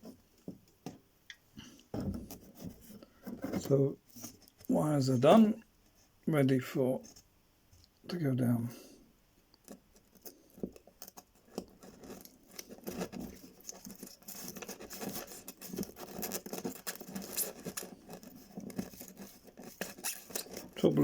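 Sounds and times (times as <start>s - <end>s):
scratching and rustling: 1.6s - 6.2s, 9.6s - 21.0s.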